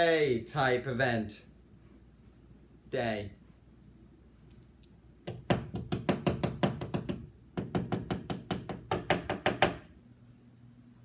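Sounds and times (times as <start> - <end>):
rapid knocking on hard surface: 5.3 - 9.9.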